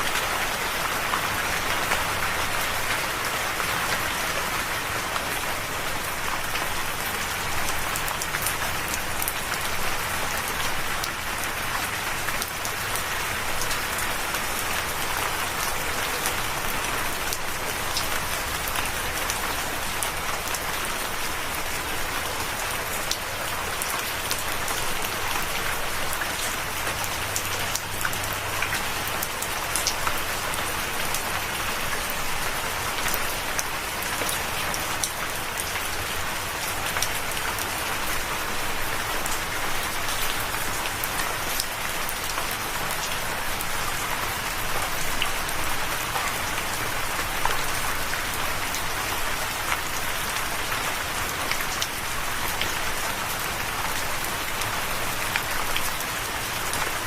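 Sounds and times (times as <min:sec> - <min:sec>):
raindrops hitting a surface: 0:00.0 - 0:57.0
steady rain hiss: 0:00.0 - 0:57.0.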